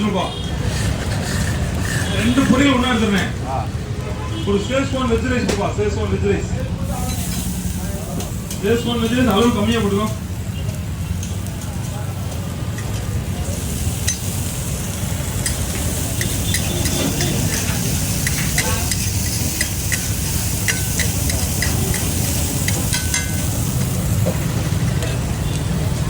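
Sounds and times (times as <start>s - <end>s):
food sizzling on a pan: 0.5s - 26.0s.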